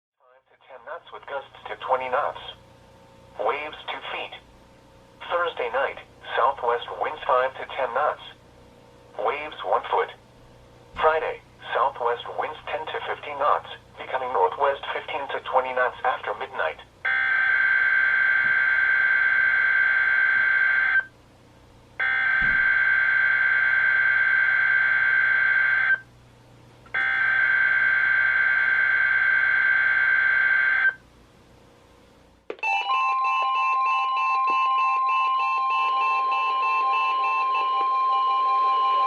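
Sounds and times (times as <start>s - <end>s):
steady warning alarm tone: 17.0s - 21.1s, 22.0s - 26.1s, 26.9s - 31.0s, 32.6s - 39.0s
pulsed radio alarm beeps: 22.0s - 26.0s, 27.0s - 31.0s, 32.6s - 39.0s.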